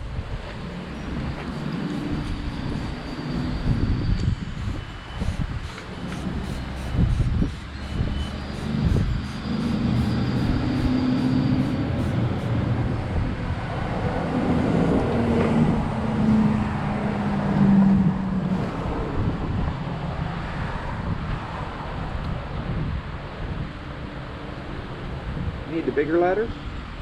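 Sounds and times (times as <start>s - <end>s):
motor vehicle engine running: 0.0s - 16.6s.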